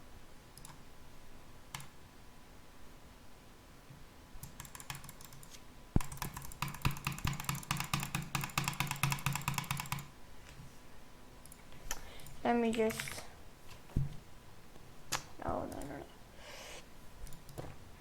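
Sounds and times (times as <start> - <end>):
mouse button clicking rapidly: 4.4 - 10.1.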